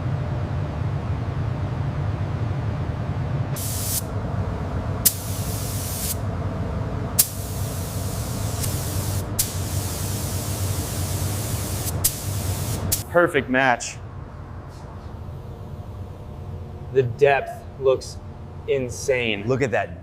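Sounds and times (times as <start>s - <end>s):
steady low hum: 0.0s - 20.0s
paint spray gun hissing: 3.6s - 4.0s, 5.0s - 6.2s, 7.2s - 13.0s.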